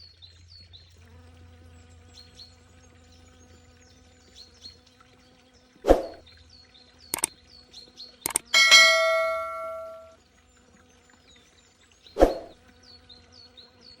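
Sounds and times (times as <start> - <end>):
faint high chirps: 8.3 - 10.1
metallic ding: 8.3 - 10.1
sharp clicks: 8.3 - 10.1.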